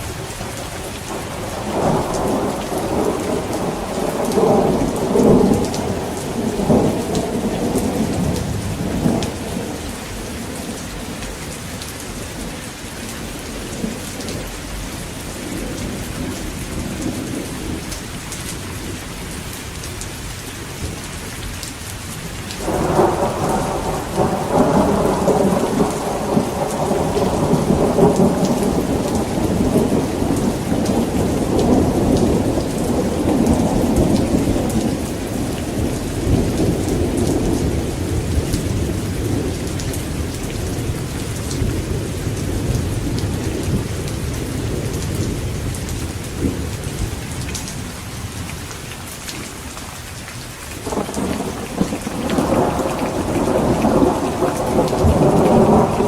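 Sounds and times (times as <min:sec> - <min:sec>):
heavy rain falling: 0:00.0 - 0:56.0
rolling thunder: 0:01.0 - 0:11.1, 0:22.6 - 0:47.7, 0:50.8 - 0:56.0.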